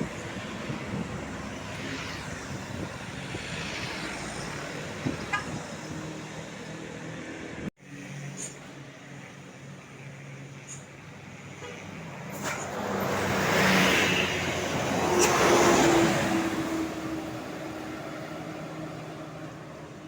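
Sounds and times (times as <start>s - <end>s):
vehicle passing by: 0.0s - 8.5s, 12.4s - 19.8s.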